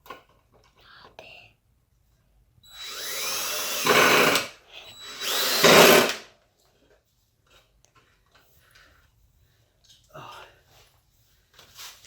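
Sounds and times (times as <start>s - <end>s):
drill driving screws into wood: 2.7s - 6.3s.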